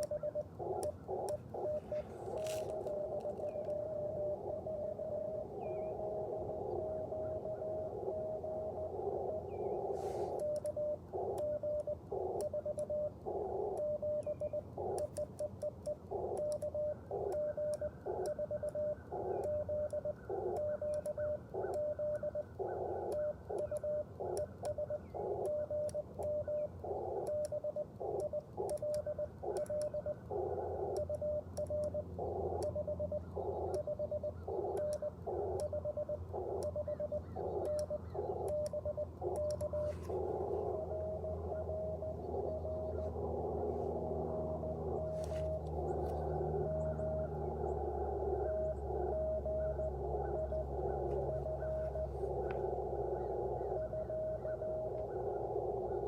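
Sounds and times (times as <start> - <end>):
faint keying clicks: 0.0 - 4.3, 9.8 - 43.2
morse code tone: 0.0 - 47.3.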